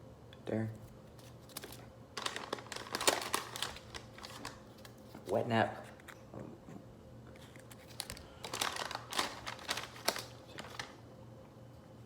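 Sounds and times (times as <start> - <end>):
plastic and paper packets crinkling: 1.1 - 6.0, 7.4 - 11.0.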